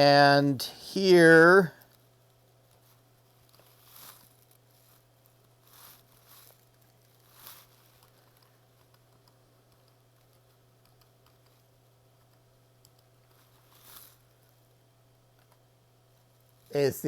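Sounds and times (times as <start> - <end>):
steady low hum: 0.0 - 17.0
faint soft rustles: 1.8 - 8.9, 13.2 - 14.8.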